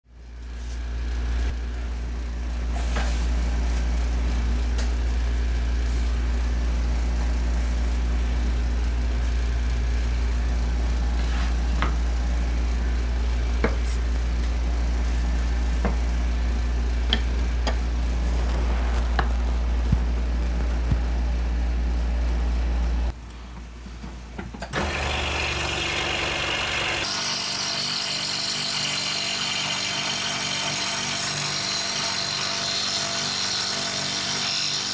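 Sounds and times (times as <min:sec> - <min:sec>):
low motor hum: 0:01.0 - 0:23.8
hissing power tool: 0:24.8 - 0:34.9.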